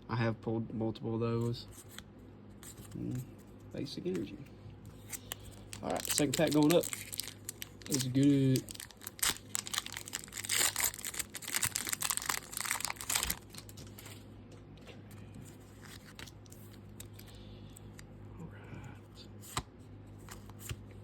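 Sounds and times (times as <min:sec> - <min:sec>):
foil wrapper tearing and crinkling: 0:05.2 - 0:14.1.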